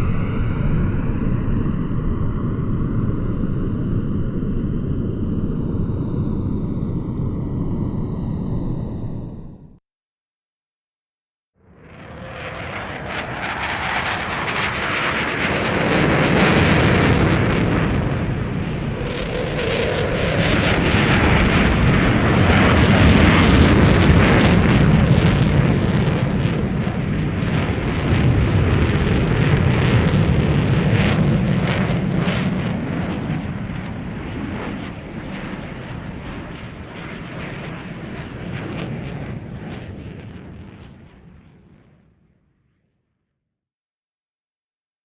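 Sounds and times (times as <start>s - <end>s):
jet aircraft passing: 0.0s - 9.8s, 28.1s - 41.0s.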